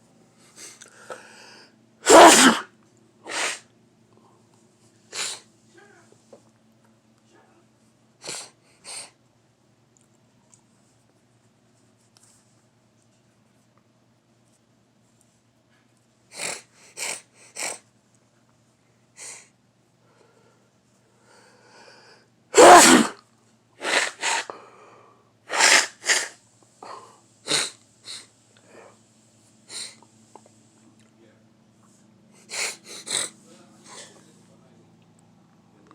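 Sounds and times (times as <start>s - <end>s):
person sneezing: 2.0s - 2.7s, 3.3s - 3.7s, 5.1s - 5.5s, 22.5s - 23.2s, 23.8s - 24.5s, 25.5s - 26.4s, 27.5s - 28.3s, 29.7s - 30.0s.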